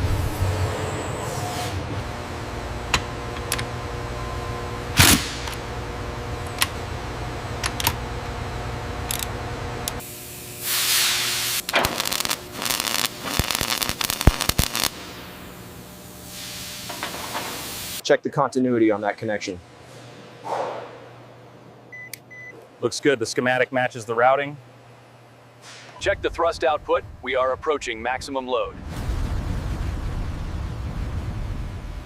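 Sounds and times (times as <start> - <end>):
workshop machinery humming: 0.0 - 27.9
sharp metallic clicks: 9.1 - 10.0
short hiss: 10.6 - 14.9.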